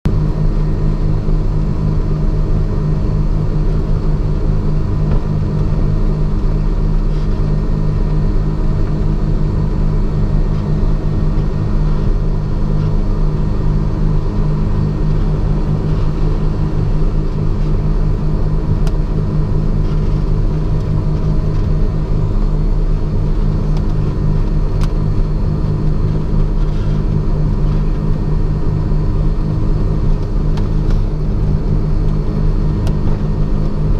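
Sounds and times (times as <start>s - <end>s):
piston aircraft engines droning: 0.1s - 33.9s.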